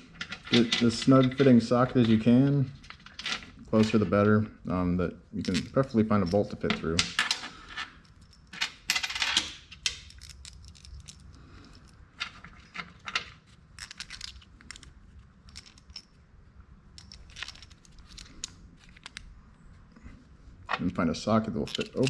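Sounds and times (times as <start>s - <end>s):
metal sockets clinking: 5.4s - 16.2s, 16.9s - 19.3s, 21.6s - 22.0s.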